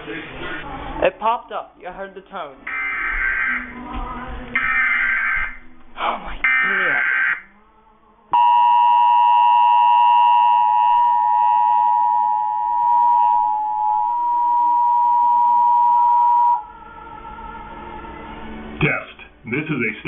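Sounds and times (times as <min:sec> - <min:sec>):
steady two-tone alert hum: 0:02.7 - 0:03.8, 0:04.6 - 0:05.7, 0:06.4 - 0:07.6, 0:08.3 - 0:17.9.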